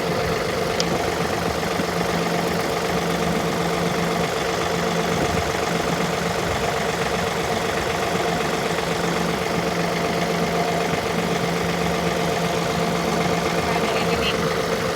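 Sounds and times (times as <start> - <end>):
tractor engine running: 0.0 - 14.9.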